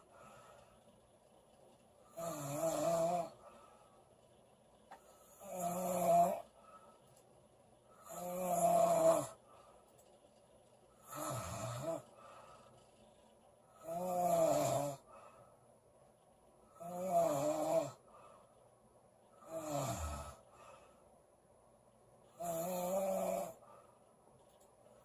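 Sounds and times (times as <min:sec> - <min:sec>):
woman snoring loudly: 0:02.1 - 0:03.4, 0:05.3 - 0:06.5, 0:08.0 - 0:09.4, 0:11.0 - 0:12.0, 0:13.8 - 0:15.0, 0:16.8 - 0:18.0, 0:19.4 - 0:20.4, 0:22.4 - 0:23.6.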